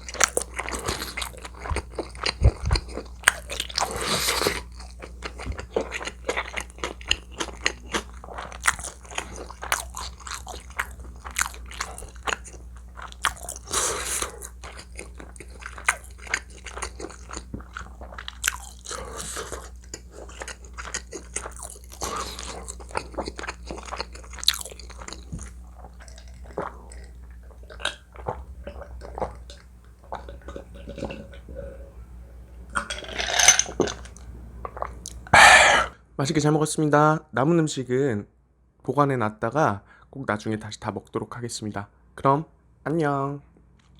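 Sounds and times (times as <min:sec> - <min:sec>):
person chewing crunchy food: 0:00.0 - 0:31.9, 0:32.8 - 0:35.9
wet mouth clicks: 0:35.1 - 0:35.9.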